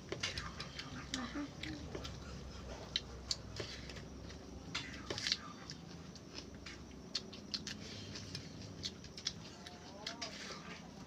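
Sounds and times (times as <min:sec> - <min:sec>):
people eating with smacking: 0:00.0 - 0:11.0.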